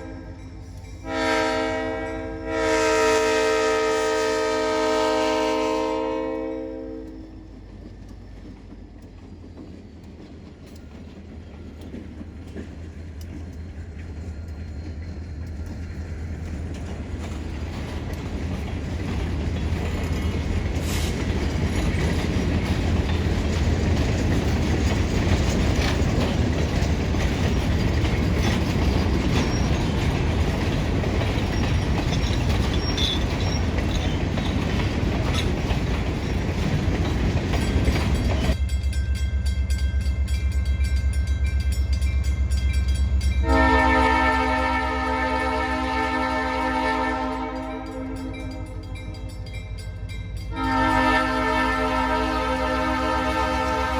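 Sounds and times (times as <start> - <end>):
freight train rumble: 0.0 - 53.9
wheels clattering over rail joints: 7.5 - 38.6.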